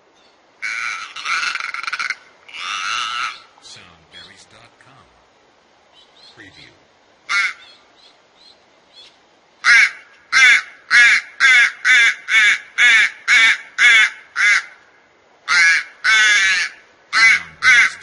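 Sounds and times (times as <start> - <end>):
crow cawing harshly: 0.6 - 3.5, 7.3 - 7.8, 9.6 - 14.9, 15.5 - 18.0.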